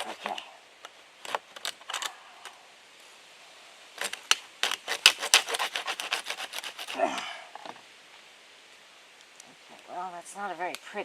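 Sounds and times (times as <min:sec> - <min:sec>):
hand saw cutting plastic: 0:00.0 - 0:00.4, 0:04.0 - 0:07.0.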